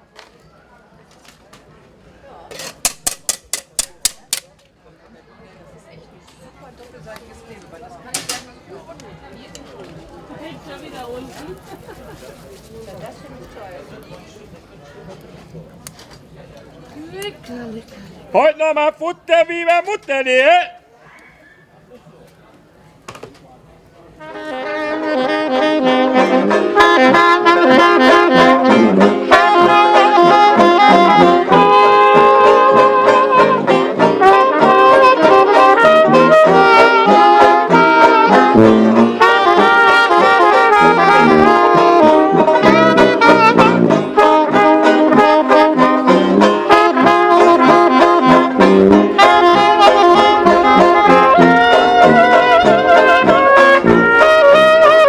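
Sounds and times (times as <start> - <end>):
brass band music: 24.2 - 55.0.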